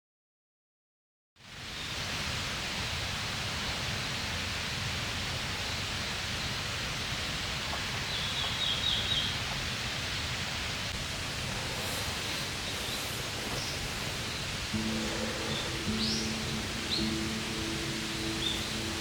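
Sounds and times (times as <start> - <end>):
rushing outdoor ambient noise: 1.4 - 19.0
bird chirps: 12.6 - 19.0.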